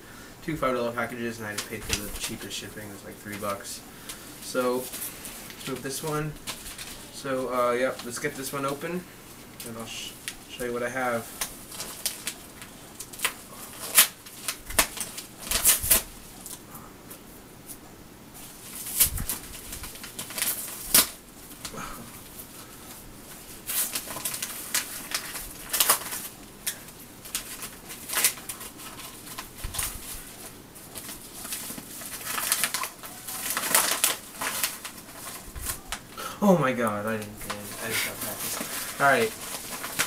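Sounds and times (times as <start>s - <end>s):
packaging crinkling and rustling: 1.0s - 16.6s, 18.4s - 40.0s
packaging crackling and tearing: 9.6s - 16.6s, 18.4s - 36.2s, 36.8s - 40.0s.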